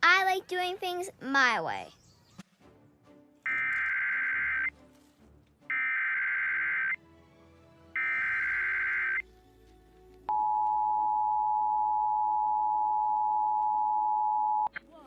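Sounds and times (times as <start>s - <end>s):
two-tone alert signal: 8.0s - 9.2s.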